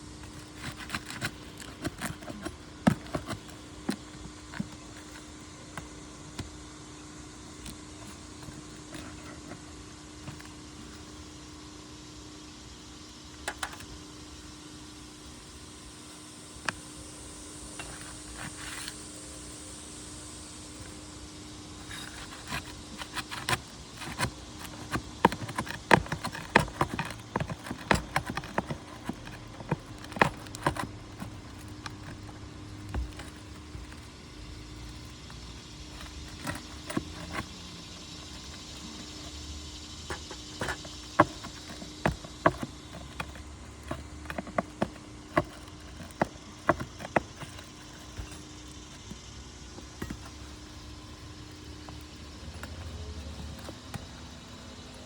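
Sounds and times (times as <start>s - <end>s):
steady low hum: 0.0s - 55.0s
sharp clicks and knocks: 21.9s - 34.1s.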